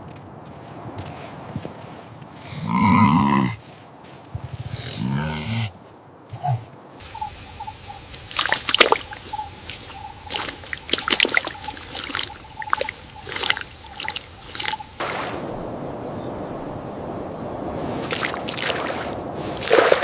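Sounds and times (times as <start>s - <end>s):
running water rushing: 7.0s - 20.0s
water splashing: 7.0s - 20.0s.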